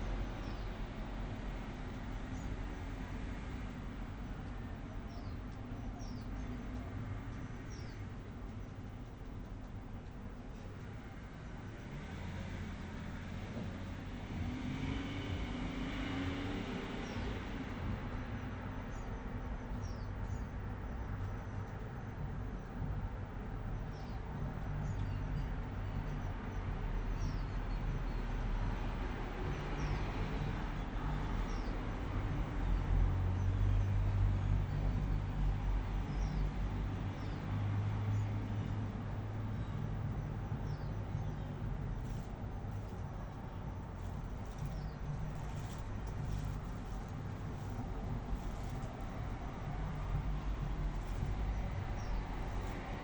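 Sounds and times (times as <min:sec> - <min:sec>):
low traffic rumble: 0:00.0 - 0:53.0
small birds chirping: 0:00.0 - 0:53.0
vehicle passing: 0:10.7 - 0:19.4, 0:28.2 - 0:53.0.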